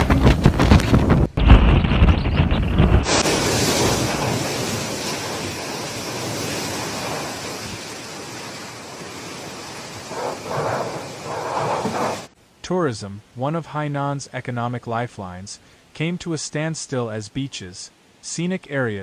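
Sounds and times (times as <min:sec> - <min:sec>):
wind buffeting microphone: 0:00.0 - 0:12.3
storm wind and rain roaring: 0:00.0 - 0:12.4.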